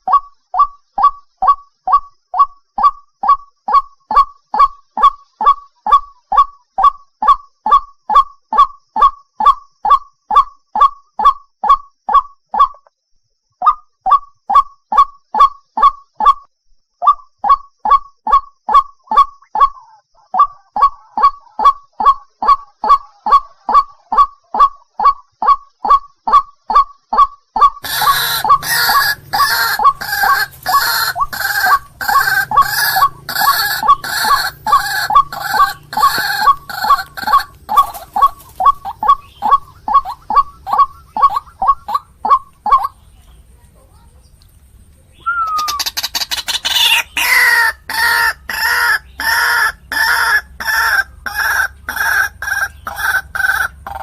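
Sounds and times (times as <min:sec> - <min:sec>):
waterhen calling: 0:18.7 - 0:43.5, 0:45.1 - 0:54.0.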